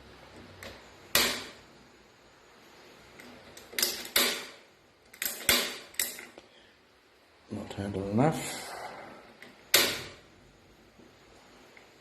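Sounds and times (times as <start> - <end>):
gas stove igniter clicking: 0.6 - 1.6, 3.6 - 6.2, 9.4 - 10.2.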